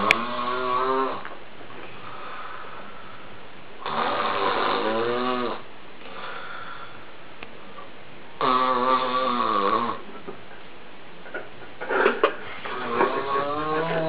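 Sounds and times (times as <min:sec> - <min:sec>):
man snoring: 0:00.0 - 0:01.2, 0:03.8 - 0:06.9, 0:08.4 - 0:10.0, 0:12.7 - 0:14.0.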